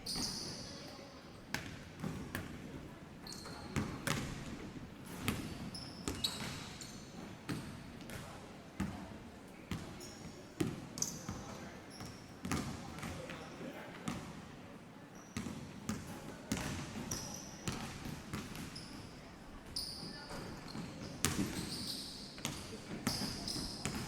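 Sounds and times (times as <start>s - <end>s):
sneaker squeaks: 0.0s - 1.0s, 3.2s - 4.5s, 5.1s - 7.6s, 9.7s - 10.4s, 11.0s - 13.6s, 15.2s - 15.7s, 16.5s - 24.0s
basketballs bouncing on court: 1.5s - 2.6s, 3.4s - 4.5s, 5.2s - 6.7s, 9.7s - 10.0s, 10.6s - 13.4s, 15.4s - 18.8s, 20.6s - 24.0s.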